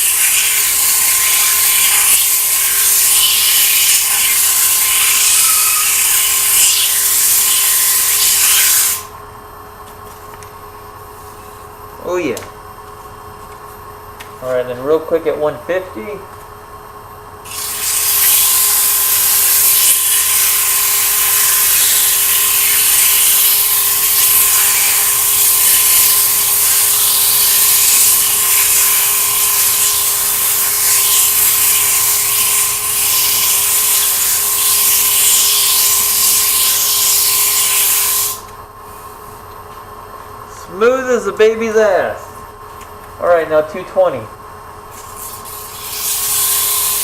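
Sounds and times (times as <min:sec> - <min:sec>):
sandpaper hissing on spinning wood: 0:00.0 - 0:09.1, 0:17.5 - 0:39.1, 0:45.0 - 0:47.0.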